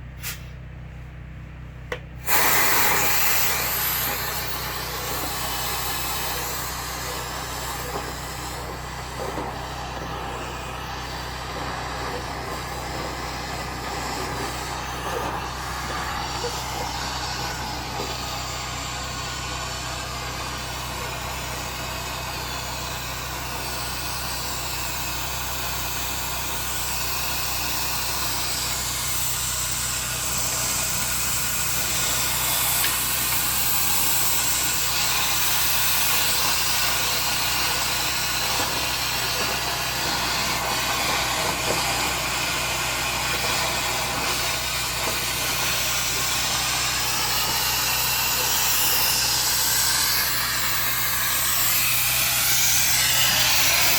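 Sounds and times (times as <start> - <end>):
power vacuum running: 1.9 - 53.9.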